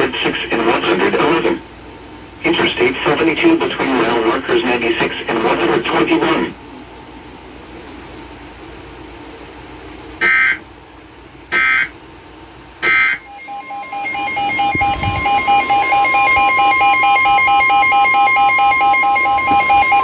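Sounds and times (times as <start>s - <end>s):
screeching digital data bursts: 12.8s - 20.0s
two-tone attention signal: 12.9s - 20.0s.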